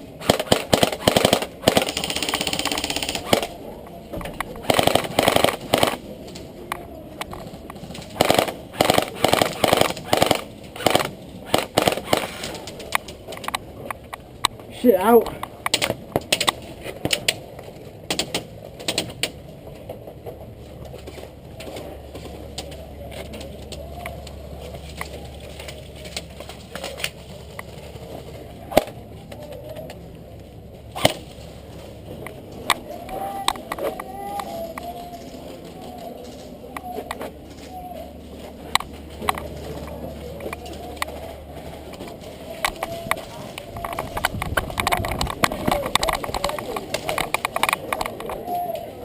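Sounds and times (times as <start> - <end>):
loud crack: 0.0 - 14.6
airsoft rifle full-auto bursts: 0.2 - 3.5, 4.6 - 6.0, 8.2 - 12.6.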